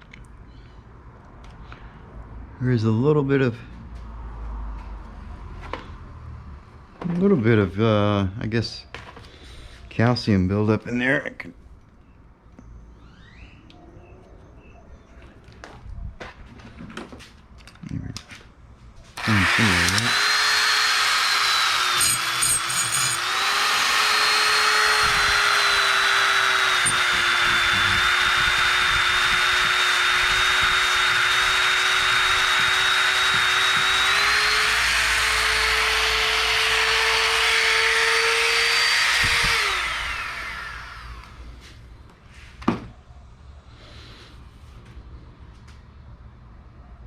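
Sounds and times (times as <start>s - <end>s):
power drill whining: 19.2s - 41.5s.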